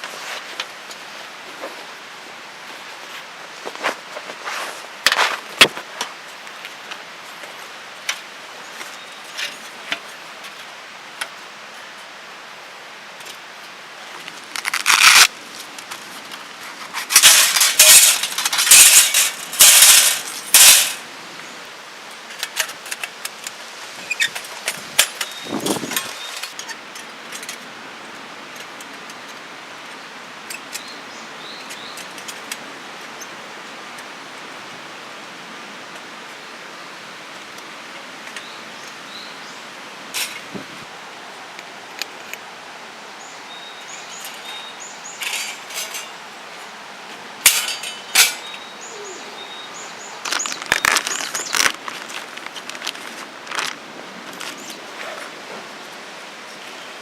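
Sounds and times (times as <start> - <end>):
handling clicks and knocks: 14.3 - 21.0, 47.4 - 48.6, 50.2 - 55.3.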